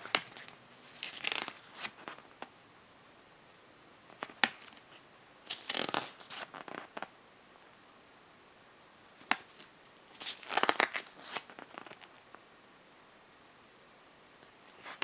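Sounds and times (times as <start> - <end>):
paper pages turning: 0.0 - 2.5, 4.2 - 7.1, 9.2 - 12.3.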